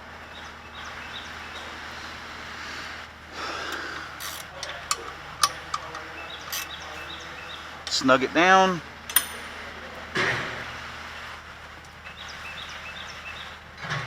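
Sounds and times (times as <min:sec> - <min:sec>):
light metal clinks: 0:09.1 - 0:09.7.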